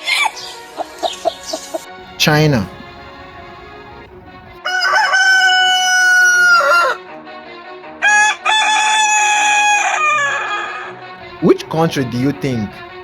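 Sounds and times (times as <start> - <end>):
rooster crowing: 2.9 - 7.1, 8.0 - 11.0.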